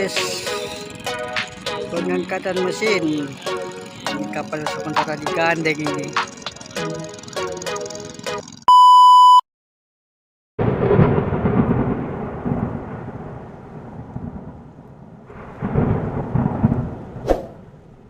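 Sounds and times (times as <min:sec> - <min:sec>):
loud rumble: 0:00.0 - 0:08.6
short steady beep: 0:08.7 - 0:09.4.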